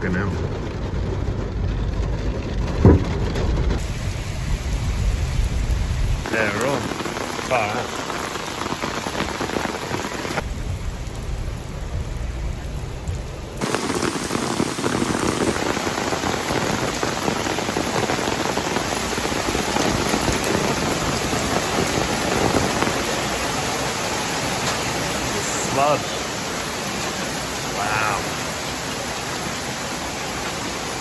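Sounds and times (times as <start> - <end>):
low rumble: 0.0 - 6.3, 10.4 - 13.6
heavy rain falling: 0.0 - 31.0.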